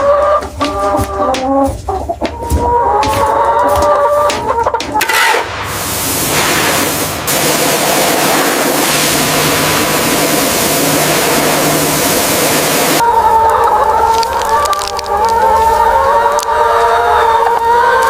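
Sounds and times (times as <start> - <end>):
chickens clucking: 0.0 - 5.5, 10.2 - 18.0
loud rushing hiss: 5.3 - 13.0.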